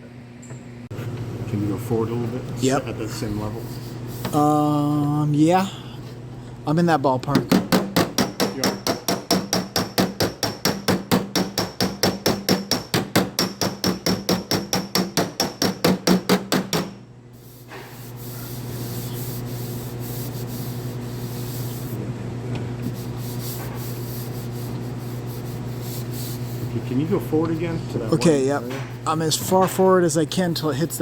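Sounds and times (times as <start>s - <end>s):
steady low hum: 0.0s - 31.0s
hammer tapping on sheet metal: 7.3s - 17.0s.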